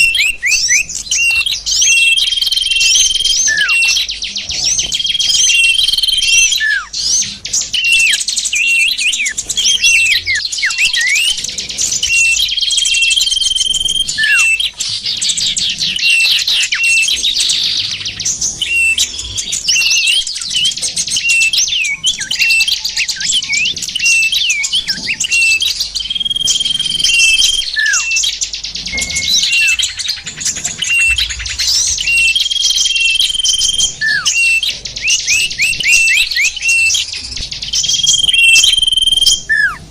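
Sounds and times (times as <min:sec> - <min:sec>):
small songbirds chirping: 0:00.0 - 0:39.9.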